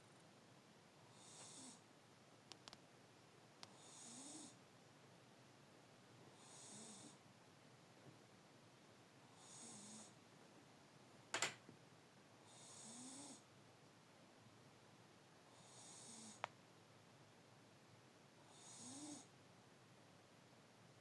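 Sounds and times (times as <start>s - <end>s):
pet snoring quietly: 1.1s - 1.9s, 3.6s - 4.6s, 6.3s - 7.2s, 9.3s - 10.2s, 12.4s - 13.5s, 15.5s - 16.5s, 18.4s - 19.4s.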